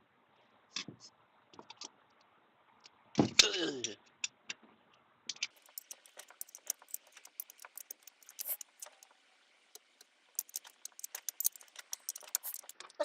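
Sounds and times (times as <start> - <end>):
socket ratchet clicking: 5.5 - 9.1, 9.8 - 13.0.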